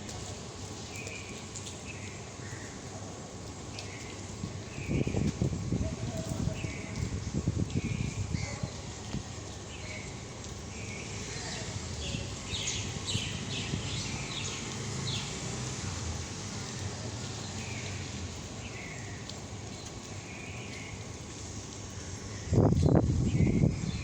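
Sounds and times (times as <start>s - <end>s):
birds chirping: 10.8s - 15.4s.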